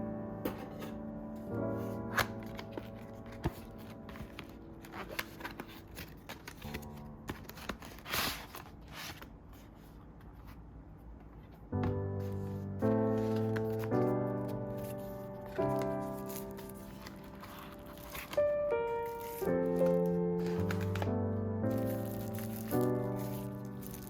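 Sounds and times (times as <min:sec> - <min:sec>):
soft piano music: 0:00.0 - 0:09.2, 0:11.0 - 0:24.0
packaging rustling and clicking: 0:01.9 - 0:09.7, 0:13.1 - 0:24.0.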